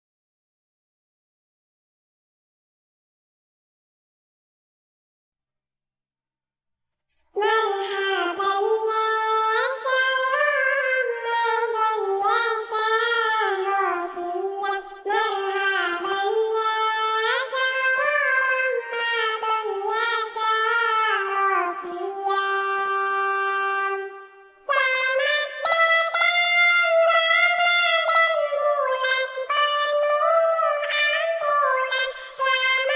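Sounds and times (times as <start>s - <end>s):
child-like voice singing: 7.4s - 32.9s.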